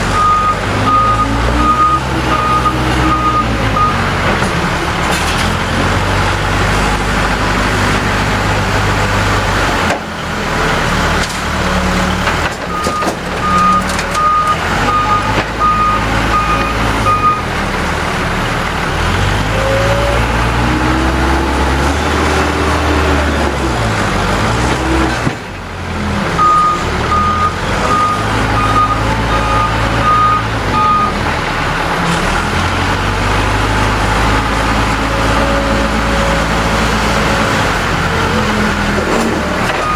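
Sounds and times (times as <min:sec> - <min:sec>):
diesel engine revving: 0:00.0 - 0:39.9
reversing alarm beeping: 0:00.2 - 0:04.0, 0:12.7 - 0:17.4, 0:26.4 - 0:31.2.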